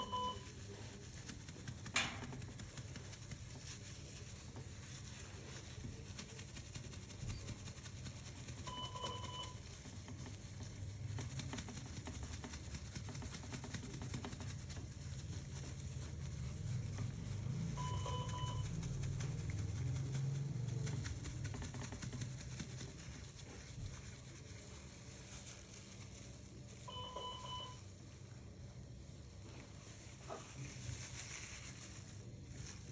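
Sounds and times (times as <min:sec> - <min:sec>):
short electronic beep: 0:00.0 - 0:00.4, 0:17.8 - 0:18.6, 0:26.9 - 0:27.8
low steady hum: 0:00.0 - 0:32.9.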